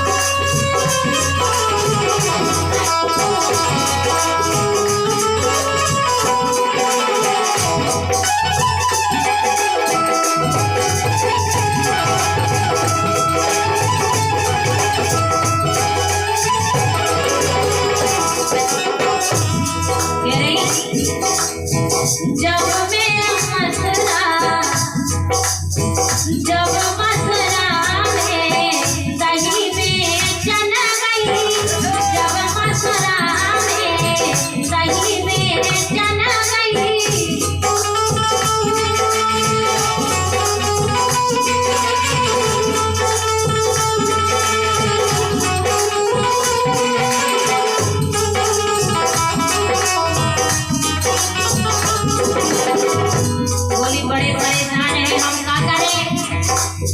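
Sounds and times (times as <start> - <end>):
folk melody: 0.0 - 21.6
rattling percussion: 0.0 - 56.9
woman singing folk song: 53.7 - 56.4.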